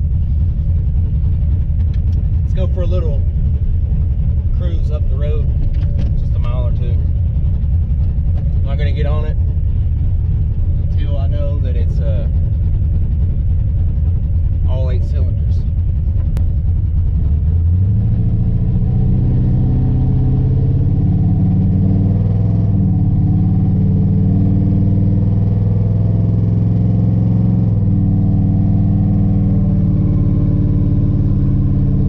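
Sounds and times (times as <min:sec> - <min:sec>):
pickup truck engine running: 0:00.0 - 0:23.8.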